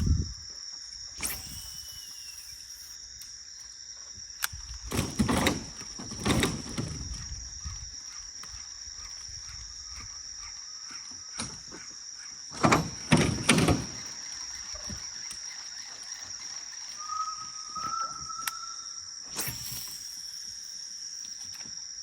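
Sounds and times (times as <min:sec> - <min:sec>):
insect chorus drone: 0:00.0 - 0:22.0
whistle-like call: 0:01.2 - 0:03.0, 0:16.9 - 0:20.6.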